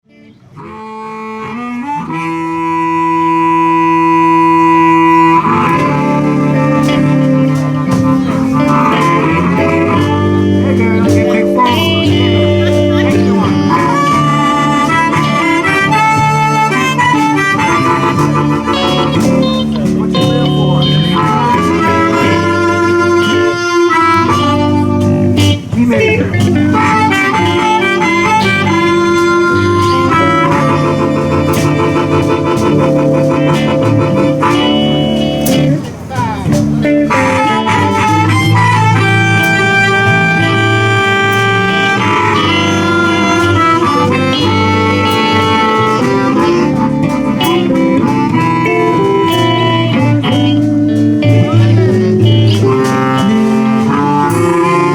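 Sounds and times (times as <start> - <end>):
blues band playing: 0.0 - 54.9
sustained band chord: 2.8 - 35.9, 36.5 - 54.9.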